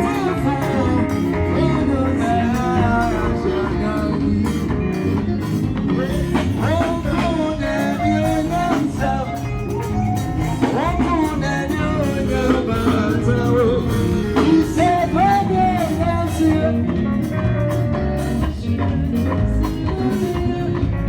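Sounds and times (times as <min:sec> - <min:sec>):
guitar: 0:00.0 - 0:21.0
person singing: 0:00.0 - 0:21.0
steady beat: 0:00.0 - 0:21.0.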